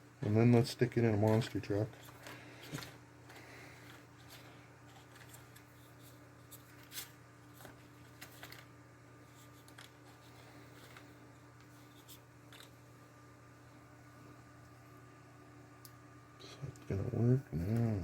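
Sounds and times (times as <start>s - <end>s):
steady low hum: 0.0s - 18.0s
clicks and rustles of handling wires: 0.2s - 12.8s.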